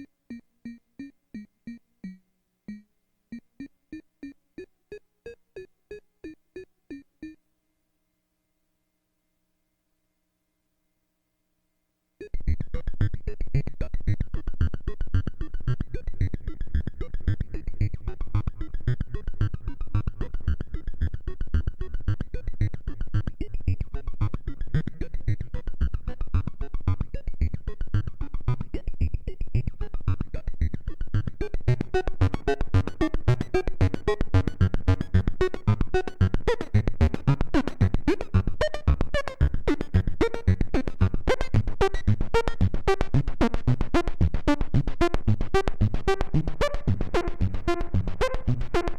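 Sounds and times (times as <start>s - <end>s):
synthesizer bass sequence: 12.4s - 48.9s.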